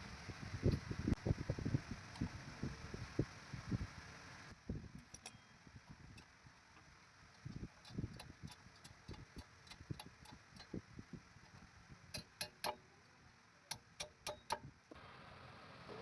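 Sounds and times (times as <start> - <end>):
light metallic clicks and clinks: 5.0 - 6.3, 11.4 - 12.8, 13.7 - 14.7.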